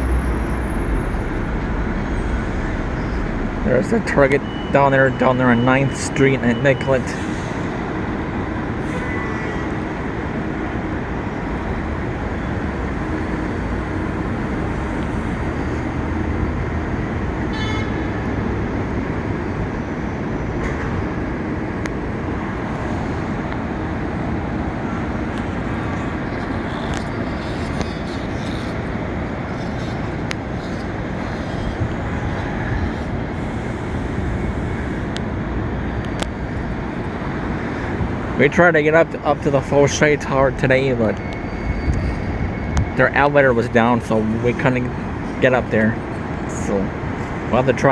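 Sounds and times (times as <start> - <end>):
street traffic rumble: 0.0 - 47.9
faint clicks and squeaks: 25.3 - 32.0.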